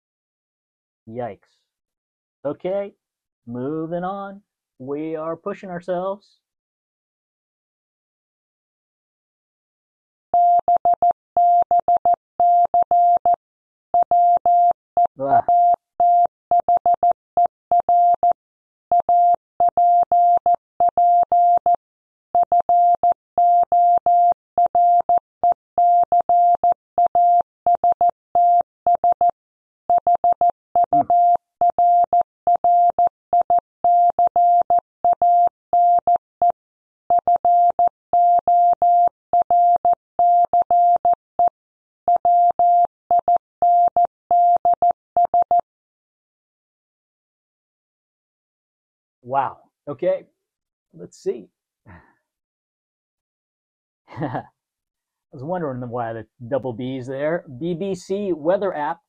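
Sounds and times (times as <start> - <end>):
morse code beeps: 14.0 - 21.7, 29.9 - 36.2, 37.1 - 41.5, 42.1 - 45.6.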